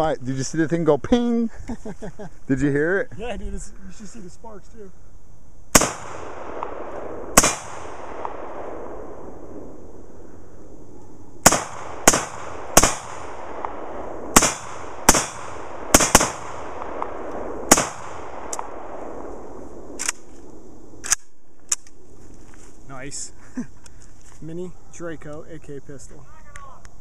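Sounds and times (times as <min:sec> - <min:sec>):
gunshots with rolling echo: 0:05.7 - 0:22.1.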